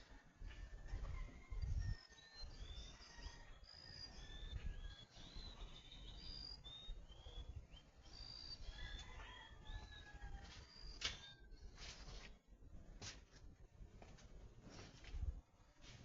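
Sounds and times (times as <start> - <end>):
birds chirping: 1.6 - 11.9.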